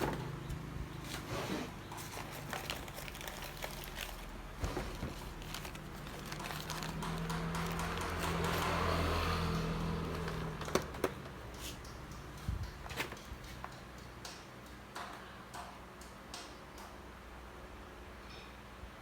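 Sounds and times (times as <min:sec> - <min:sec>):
low electrical hum: 0:00.0 - 0:08.9
sharp clicks and taps: 0:06.4 - 0:08.9, 0:09.5 - 0:17.0.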